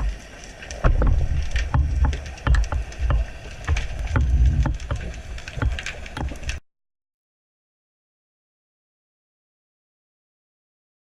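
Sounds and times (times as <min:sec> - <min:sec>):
crackling clicks underwater: 0:00.0 - 0:06.6
underwater water rumbling: 0:00.0 - 0:06.6.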